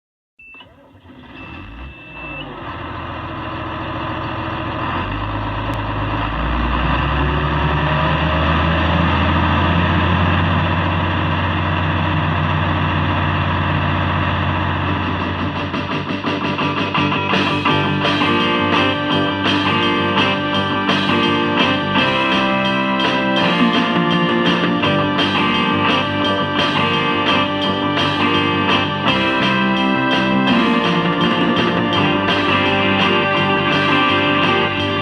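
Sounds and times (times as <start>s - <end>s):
farm machine engine revving: 0.7s - 16.4s, 17.4s - 35.0s
high electronic beep: 1.4s - 2.5s.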